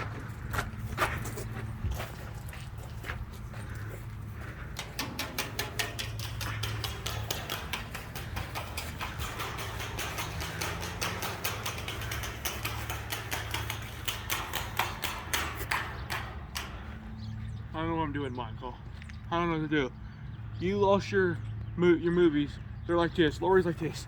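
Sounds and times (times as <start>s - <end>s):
steady low hum: 0.0s - 20.5s
fast even clicking: 4.7s - 16.9s.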